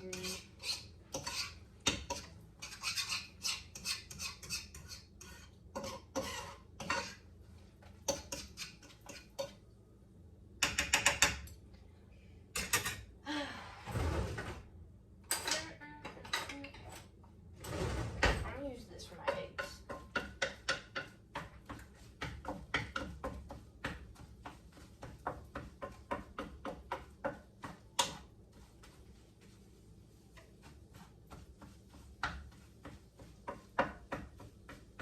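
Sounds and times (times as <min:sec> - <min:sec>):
rough scrape: 0:02.6 - 0:07.2
metal utensils clinking on dishes: 0:15.3 - 0:17.1.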